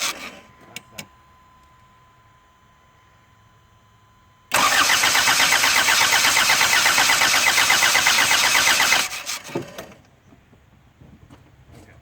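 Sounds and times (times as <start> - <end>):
engine cranking without starting: 4.5 - 10.0.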